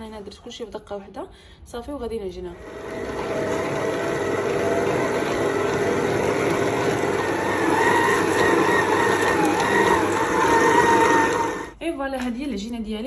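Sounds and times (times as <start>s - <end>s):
electric mixer motor whining: 2.6s - 11.8s.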